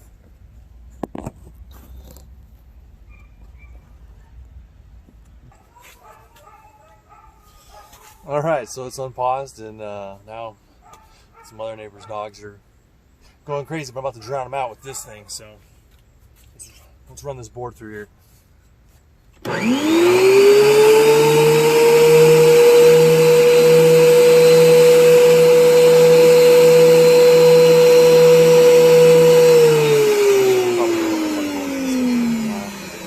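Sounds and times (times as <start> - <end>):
thickness planer whining: 19.4 - 33.0.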